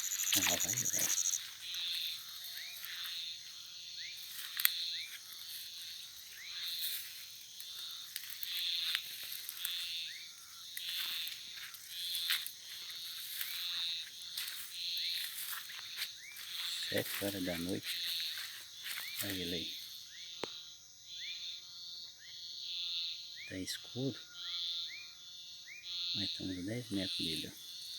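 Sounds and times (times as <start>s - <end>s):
short rising chirps: 0.0s - 1.4s
high-pitched drone: 0.0s - 1.7s
frogs and insects chorus: 0.0s - 27.9s.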